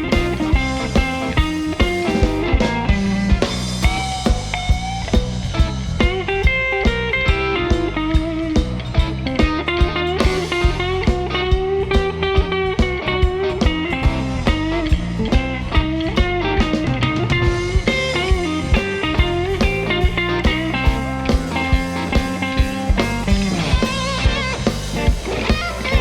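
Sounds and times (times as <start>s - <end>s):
bass: 0.0s - 26.0s
electric guitar soloing: 0.0s - 26.0s
steady drum beat: 0.0s - 26.0s.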